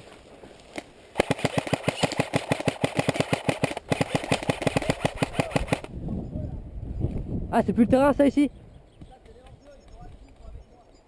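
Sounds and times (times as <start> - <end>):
airsoft gun full-auto burst: 1.2 - 5.9.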